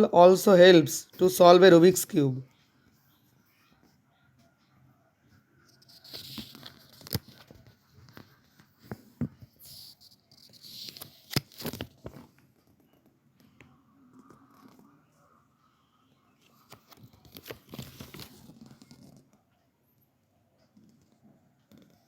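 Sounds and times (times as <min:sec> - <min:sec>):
packaging crinkling and tearing: 0:10.6 - 0:12.2, 0:16.7 - 0:18.5.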